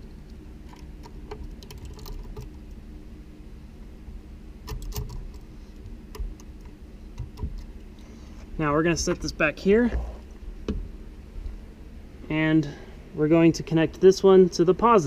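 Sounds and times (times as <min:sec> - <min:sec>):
low hum: 0:00.0 - 0:15.0
speaker wire clicks and taps: 0:04.6 - 0:07.7.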